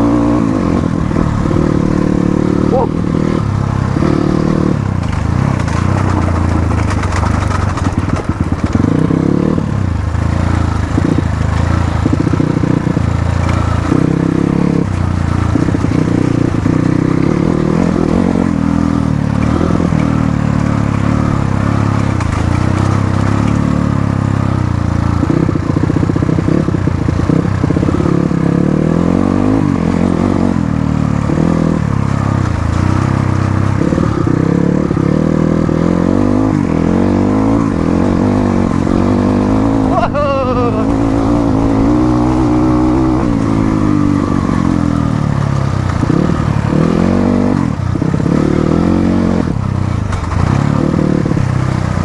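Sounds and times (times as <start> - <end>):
motorcycle engine revving: 0.0 - 52.0
bike knocks and rattles: 1.1 - 9.6, 18.3 - 24.6.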